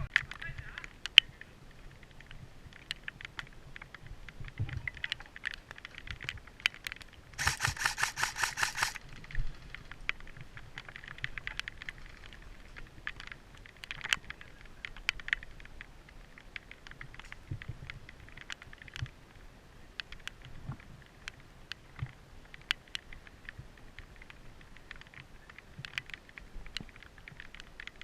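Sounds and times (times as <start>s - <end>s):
airsoft gun full-auto burst: 7.4s - 9.0s
light clicks: 7.4s - 9.0s
rustles of movement: 7.4s - 14.7s.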